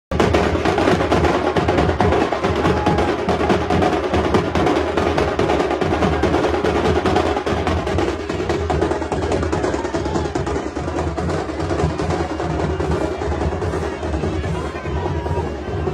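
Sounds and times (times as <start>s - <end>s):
drums in fast rhythm: 0.1s - 15.9s.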